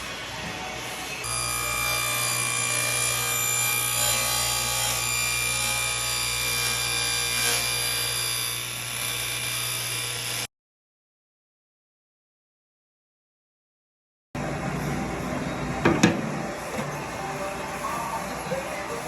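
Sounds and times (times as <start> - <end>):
power saw cutting wood: 0.0 - 10.5.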